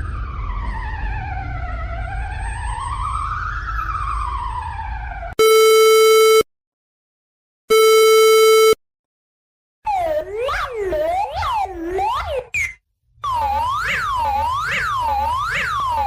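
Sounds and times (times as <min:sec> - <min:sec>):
siren wailing: 0:00.0 - 0:06.4, 0:09.9 - 0:16.0
electronic alarm beeps: 0:05.4 - 0:06.5, 0:07.7 - 0:08.8.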